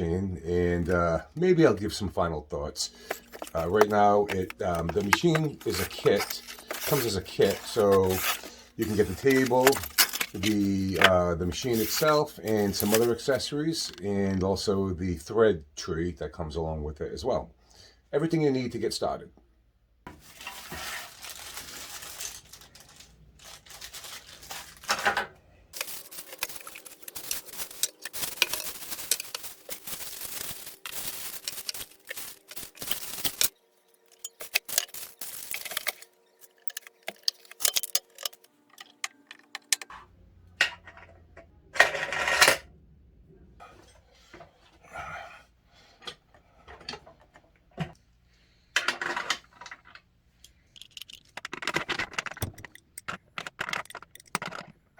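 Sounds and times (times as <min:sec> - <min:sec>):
clatter of parts and tools: 0:02.9 - 0:13.2, 0:23.7 - 0:40.0, 0:48.8 - 0:54.9
packaging rustling: 0:02.9 - 0:13.3, 0:20.1 - 0:39.8, 0:50.7 - 0:54.9.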